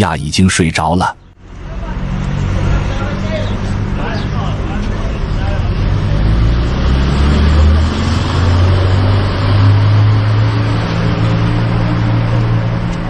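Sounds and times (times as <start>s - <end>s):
street traffic noise: 0.0s - 13.0s
vehicle engine running: 1.2s - 6.5s.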